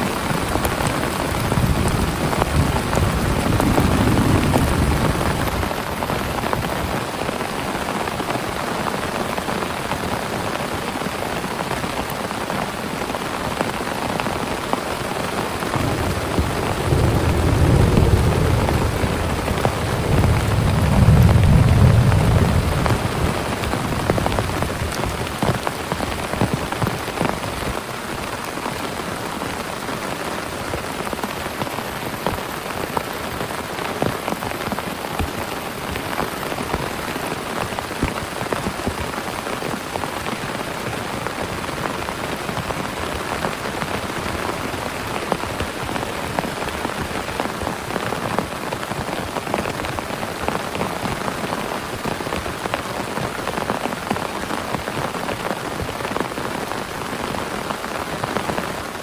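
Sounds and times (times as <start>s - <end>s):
heavy rain falling: 0.0s - 59.0s
thunder rumble: 0.4s - 5.7s, 15.5s - 26.5s.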